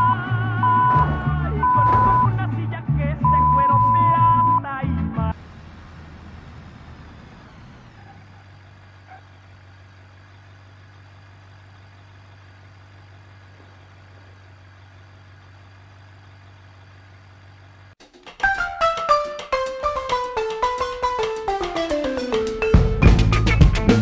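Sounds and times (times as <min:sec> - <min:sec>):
low mechanical hum: 0:05.3 - 0:18.0.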